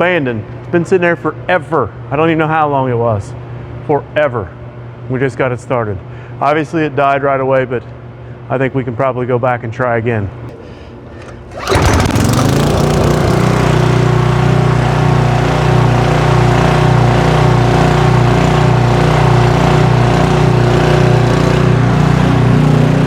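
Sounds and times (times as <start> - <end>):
pull cord: 10.5 - 14.0
generator engine running: 10.5 - 23.0.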